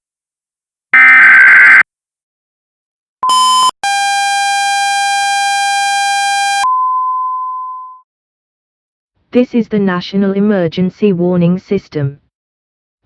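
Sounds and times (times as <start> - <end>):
steady electronic beep: 1.0 - 1.8, 3.2 - 4.1.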